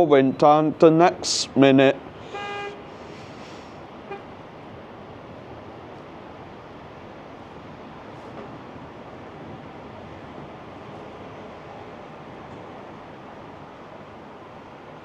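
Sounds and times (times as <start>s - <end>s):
distant traffic hiss: 0.0s - 15.0s
wind: 0.0s - 15.0s
car horn toot: 2.2s - 3.0s, 4.1s - 4.3s.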